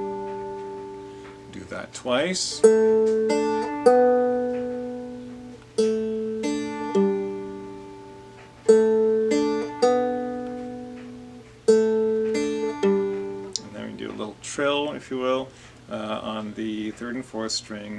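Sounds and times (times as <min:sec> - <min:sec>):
dulcimer notes picked singly: 0:00.0 - 0:14.3.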